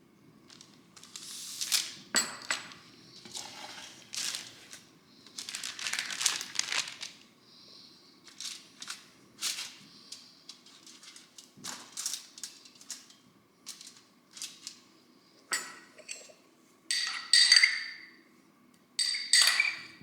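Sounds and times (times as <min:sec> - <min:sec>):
wrapping crinkling and rustling: 0:00.4 - 0:02.1, 0:03.2 - 0:07.4, 0:08.2 - 0:14.9.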